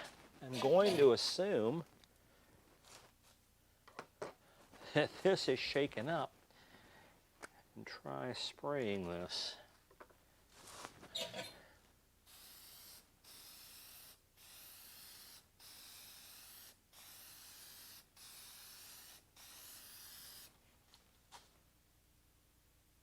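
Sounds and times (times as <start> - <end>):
aerosol can spraying: 12.3 - 20.5.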